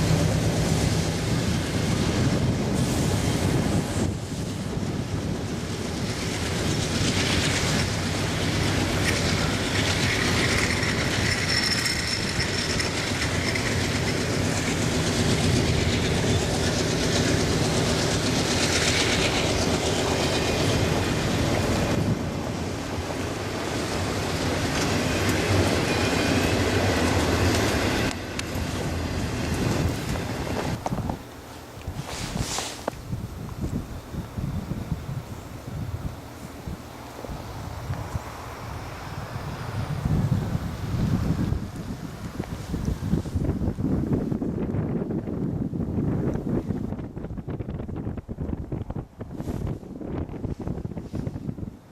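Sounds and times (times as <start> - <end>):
train wheels clicking over rail joints: 0.0 - 33.0
low train drone: 0.0 - 51.9
high wheel squeal: 9.0 - 14.8.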